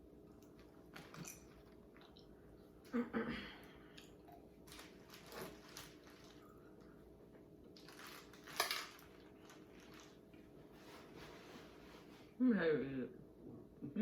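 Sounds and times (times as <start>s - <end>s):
person chewing food: 0.3s - 2.9s, 3.6s - 10.4s.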